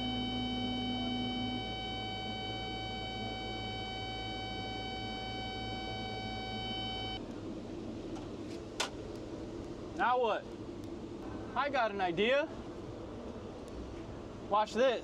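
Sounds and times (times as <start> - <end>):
electronic warning tone: 0.0 - 7.2
low machine hum: 0.0 - 14.5.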